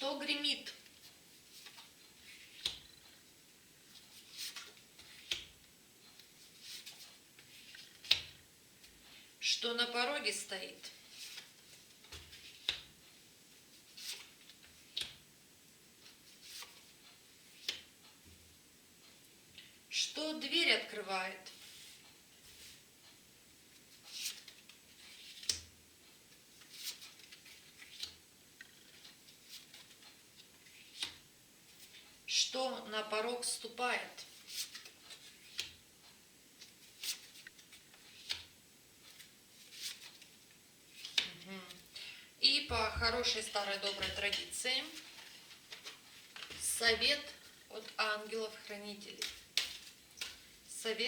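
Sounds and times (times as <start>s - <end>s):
cards rustling: 3.9s - 9.2s, 24.1s - 25.6s, 34.3s - 35.8s, 36.6s - 38.5s, 39.1s - 41.8s, 42.7s - 48.0s, 49.2s - 50.7s
cards sliding: 49.2s - 50.5s.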